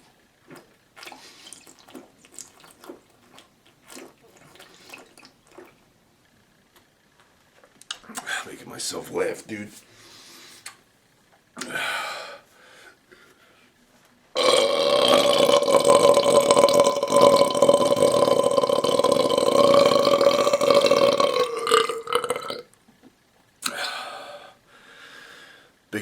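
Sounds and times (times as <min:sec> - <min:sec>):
man belching: 0:14.4 - 0:22.7.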